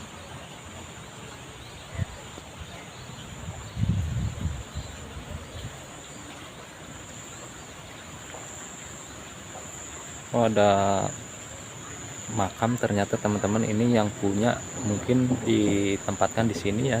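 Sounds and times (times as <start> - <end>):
light rain hiss: 0.0 - 17.0
low rumble on microphone: 3.4 - 5.9.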